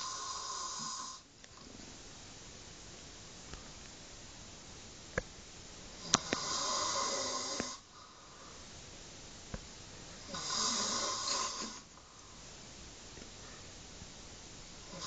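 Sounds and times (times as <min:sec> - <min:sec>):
person snoring loudly: 0:00.0 - 0:01.3, 0:06.0 - 0:07.9, 0:10.2 - 0:11.9.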